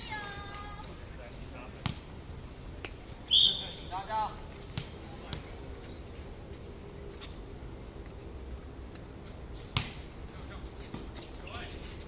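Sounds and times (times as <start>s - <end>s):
low steady background noise: 0.0s - 12.0s
volleyball impact smack: 9.8s - 10.0s.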